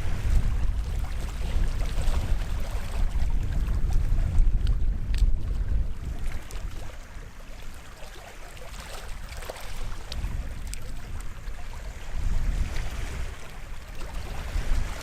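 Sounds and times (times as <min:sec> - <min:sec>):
small waves washing ashore: 0:00.0 - 0:15.0
light splashes: 0:07.9 - 0:11.7.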